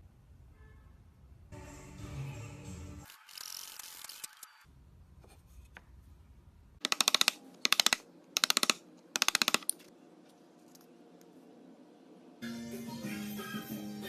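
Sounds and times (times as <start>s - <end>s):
rapid mechanical clicking: 6.8s - 9.8s.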